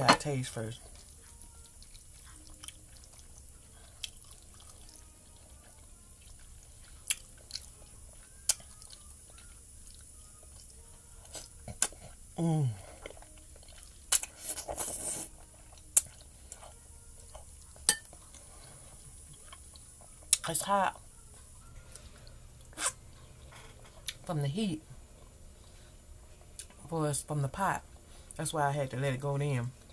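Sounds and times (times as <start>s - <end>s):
person humming mm: 11.4s - 13.2s
slurping noodles: 14.3s - 15.3s.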